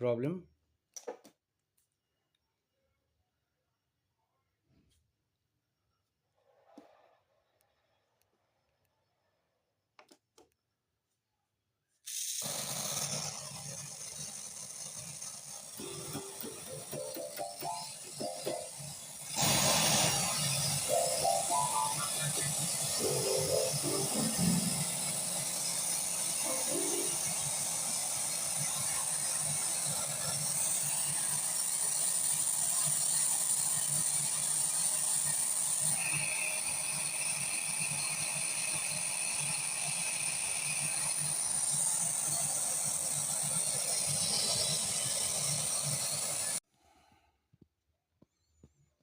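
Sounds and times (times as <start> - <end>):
thin steady whistle: 15.8 - 25.2, 35.9 - 38.3.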